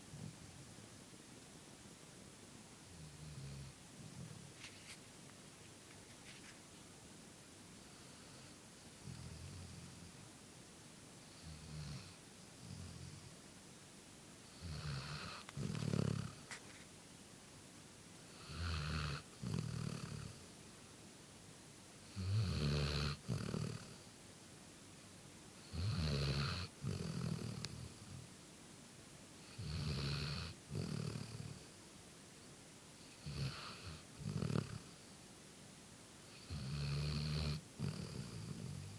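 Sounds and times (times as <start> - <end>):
puppy snoring: 2.9 - 4.4, 7.9 - 10.2, 11.3 - 13.4, 14.4 - 16.7, 18.3 - 20.5, 22.0 - 24.1, 25.6 - 28.3, 29.4 - 31.8, 33.0 - 35.0, 36.3 - 38.9.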